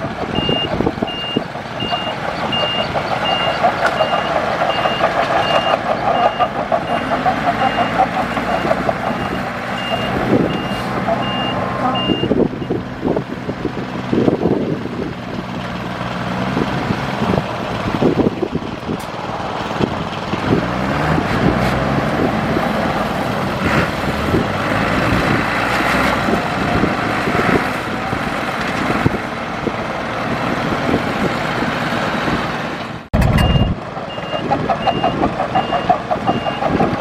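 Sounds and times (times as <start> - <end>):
heavy diesel engine labouring: 0.0 - 37.0
reversing alarm beeping: 0.4 - 12.8, 33.2 - 36.9.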